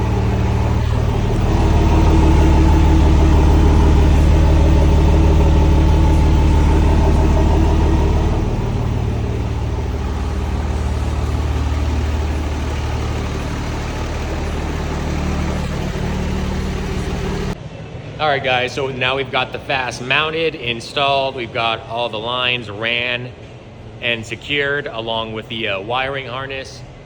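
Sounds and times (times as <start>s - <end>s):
diesel engine idling: 0.0s - 17.6s.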